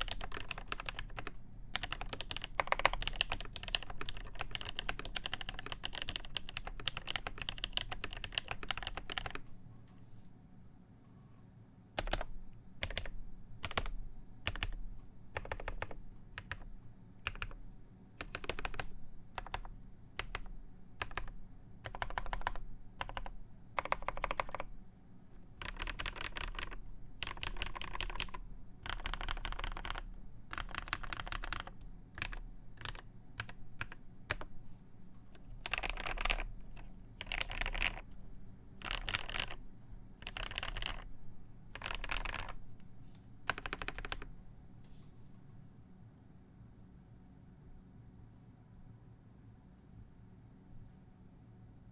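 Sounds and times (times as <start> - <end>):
mechanical keyboard typing: 0.0 - 9.4, 12.0 - 14.8, 15.4 - 17.6, 18.2 - 24.8, 25.4 - 34.5, 35.4 - 38.2, 38.8 - 41.1, 41.7 - 42.7, 43.5 - 44.4.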